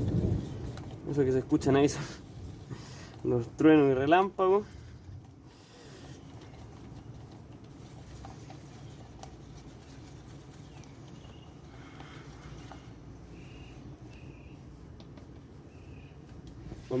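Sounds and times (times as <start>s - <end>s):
distant thunder rumble: 0.0s - 0.9s.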